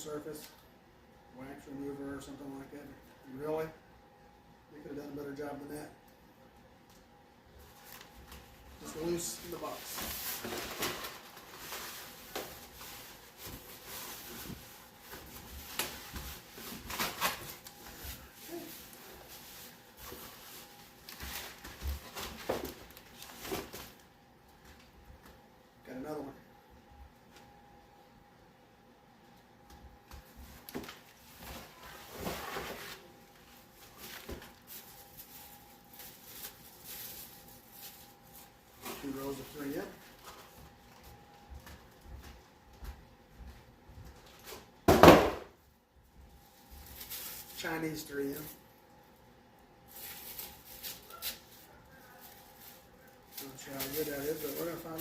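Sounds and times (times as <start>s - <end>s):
cardboard packaging rustling: 7.7s - 24.0s, 30.6s - 41.3s, 46.5s - 48.6s, 49.8s - 55.0s.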